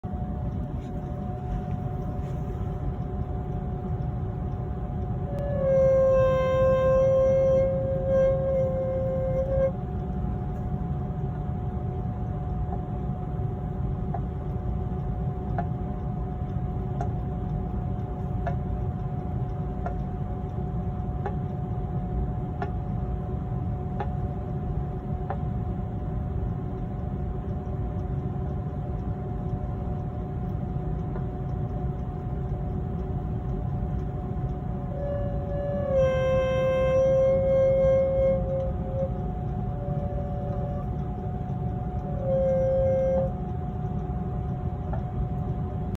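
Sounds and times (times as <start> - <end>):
humidifier droning hum: 0.0 - 45.9
faint ticks: 26.5 - 45.9.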